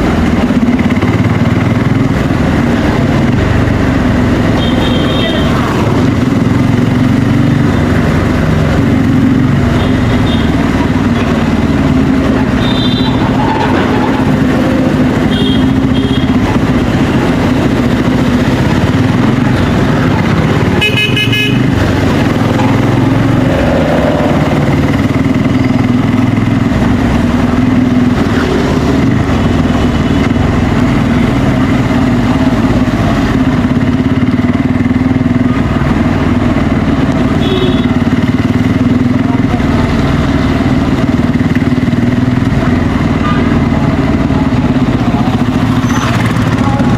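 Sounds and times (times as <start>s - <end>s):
motorcycle engine running: 0.0s - 46.9s
vehicle horns honking: 4.5s - 5.7s, 9.7s - 10.6s, 12.5s - 14.3s, 15.1s - 16.5s, 20.6s - 21.8s, 37.3s - 38.1s.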